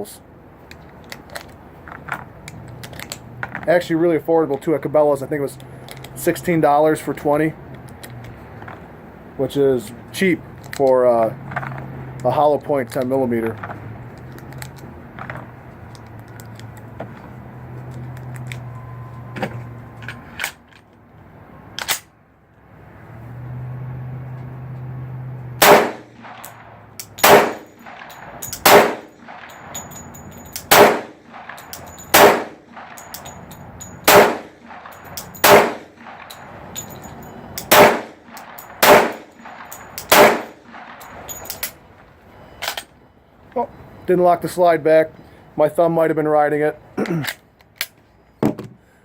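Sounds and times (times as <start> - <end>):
pistol shots: 25.6 - 29.9, 30.6 - 33.4, 34.0 - 36.5, 37.6 - 41.3.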